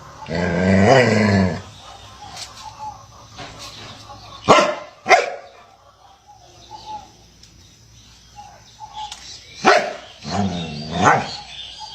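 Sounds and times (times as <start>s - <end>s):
dog barking: 4.4s - 5.6s, 9.6s - 10.1s.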